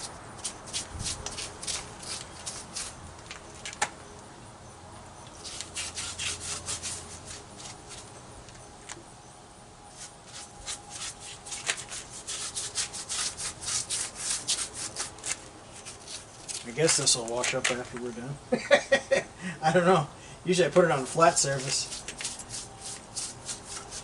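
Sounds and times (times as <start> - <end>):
brush scrubbing rough wall: 0.0 - 3.0, 5.4 - 8.2, 9.9 - 17.4, 20.8 - 24.0.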